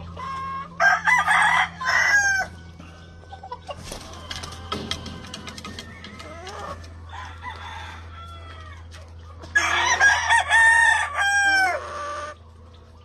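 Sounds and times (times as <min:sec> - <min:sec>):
distant bird calls: 0:00.0 - 0:07.1
rooster crowing: 0:00.4 - 0:02.6, 0:06.2 - 0:08.9, 0:09.5 - 0:12.4.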